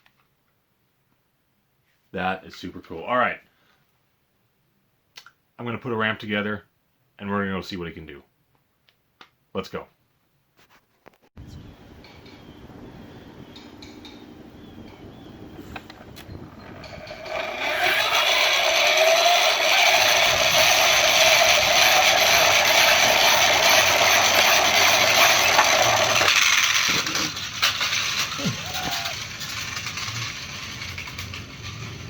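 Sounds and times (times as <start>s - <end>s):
toy launcher gear whirring: 16.2s - 32.0s
light clatters: 22.0s - 32.0s.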